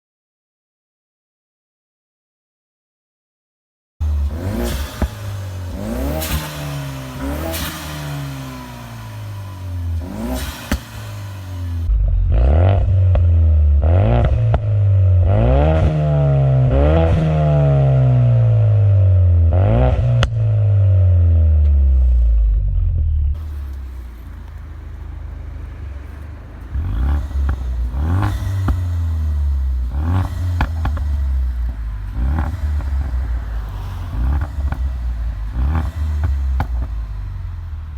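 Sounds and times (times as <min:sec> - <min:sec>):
car engine revving: 0:04.0 - 0:37.9
exhaust pops and crackles: 0:04.2 - 0:13.4, 0:22.9 - 0:37.9.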